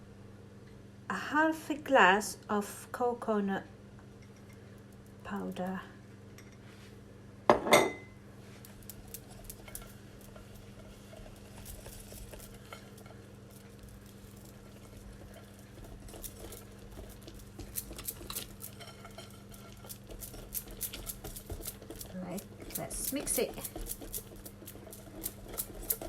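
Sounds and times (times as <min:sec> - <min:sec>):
spoon stirring batter in bowl: 0:08.5 - 0:26.0.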